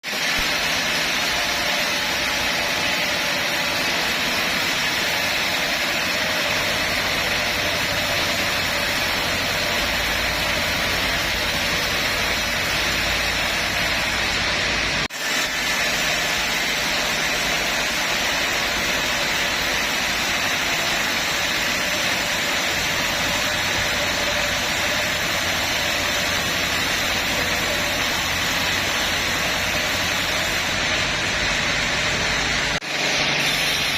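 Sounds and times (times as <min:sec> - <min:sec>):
bandsaw running: 0:00.0 - 0:33.9.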